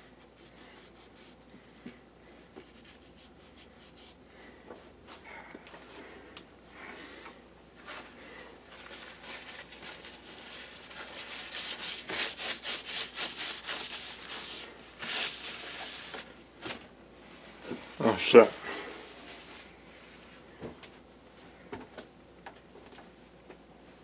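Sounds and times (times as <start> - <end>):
rubbing against a hard surface: 8.7 - 16.3.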